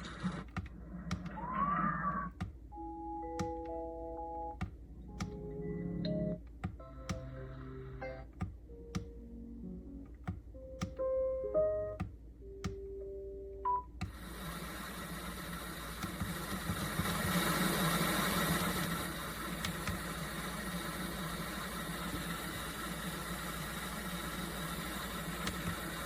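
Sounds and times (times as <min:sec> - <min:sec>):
white-noise hiss: 0:00.0 - 0:01.2, 0:02.6 - 0:26.0
button clicks: 0:02.4 - 0:09.3, 0:10.0 - 0:13.0.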